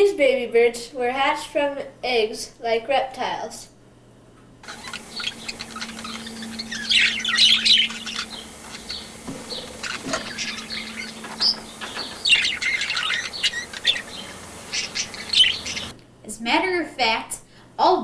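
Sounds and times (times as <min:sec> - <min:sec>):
steady low hum: 0:03.7 - 0:16.3
small birds chirping: 0:04.7 - 0:16.0.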